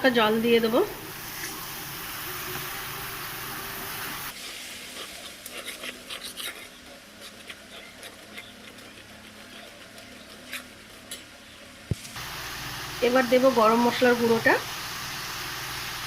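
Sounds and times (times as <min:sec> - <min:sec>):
crackling and spitting of frying: 0:00.0 - 0:16.0
loud hissing from frying pan: 0:01.0 - 0:05.3, 0:12.2 - 0:16.0.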